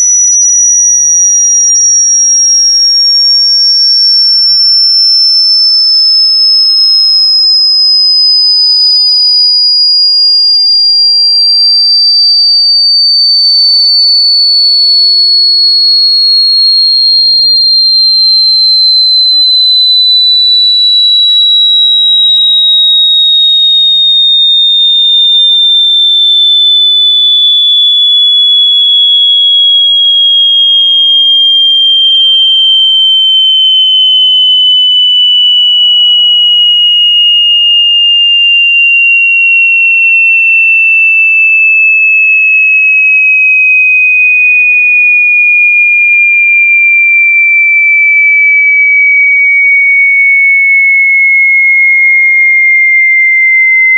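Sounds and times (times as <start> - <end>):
electronic sine tone gliding down: 0.0 - 40.5.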